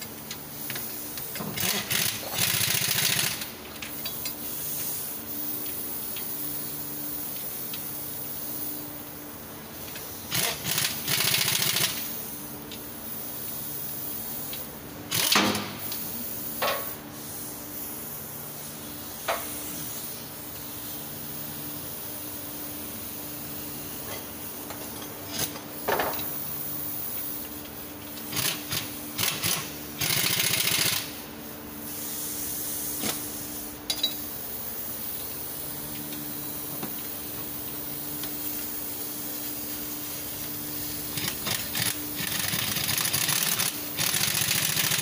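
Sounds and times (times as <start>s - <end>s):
mechanical hum: 0.0s - 45.0s
power tool rattling: 10.3s - 12.0s, 28.3s - 31.1s, 41.2s - 45.0s.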